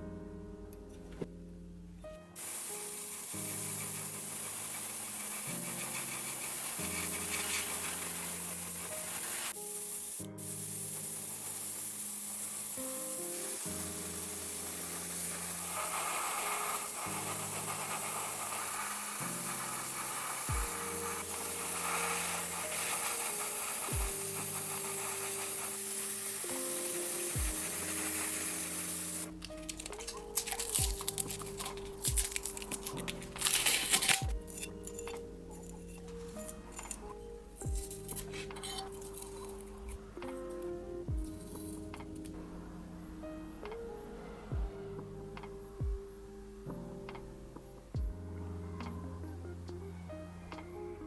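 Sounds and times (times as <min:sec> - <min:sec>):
background music with slow chords: 0:00.0 - 0:51.0
continuous rasping hiss: 0:00.0 - 0:51.0.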